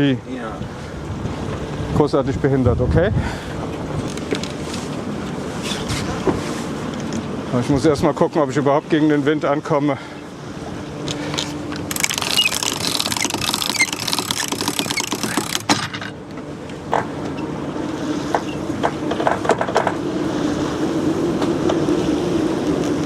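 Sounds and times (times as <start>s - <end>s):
strong wind buffeting microphone: 0.0s - 6.5s
gear knocking and rattling: 11.8s - 16.2s.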